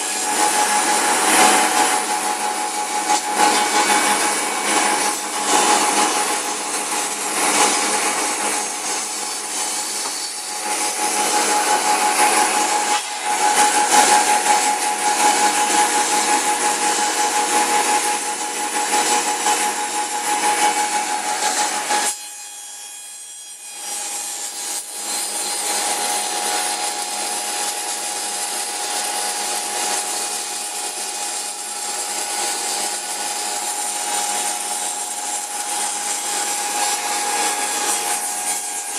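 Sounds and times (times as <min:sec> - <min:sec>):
cutting machine blades whining: 0:00.0 - 0:22.1, 0:24.9 - 0:38.9
rough cutting noise: 0:00.0 - 0:22.1, 0:23.8 - 0:38.9.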